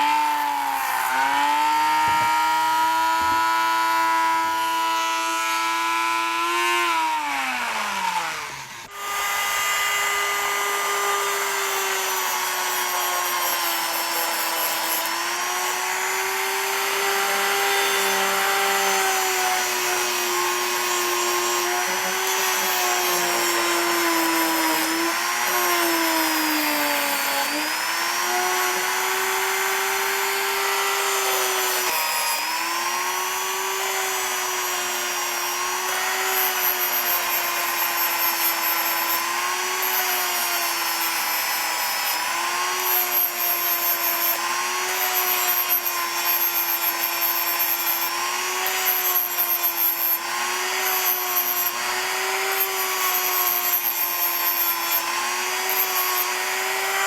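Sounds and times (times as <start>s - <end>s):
power tool motor running: 0.0s - 57.0s.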